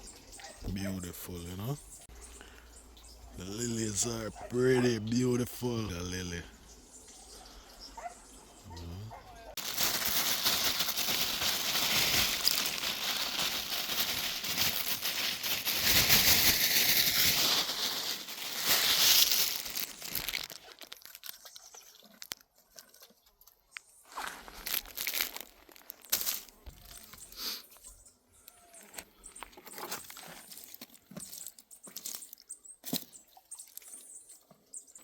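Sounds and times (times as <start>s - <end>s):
loud crackly rustling: 9.6s - 21.2s.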